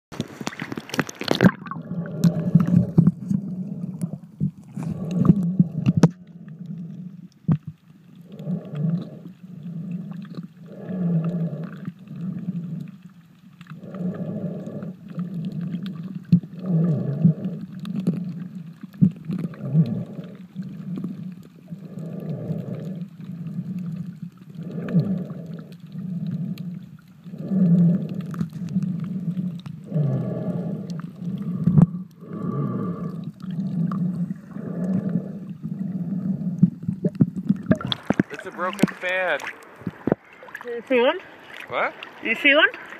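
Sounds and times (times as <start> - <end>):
snorkeler breathing underwater: 0.4 - 7.3, 19.2 - 40.6.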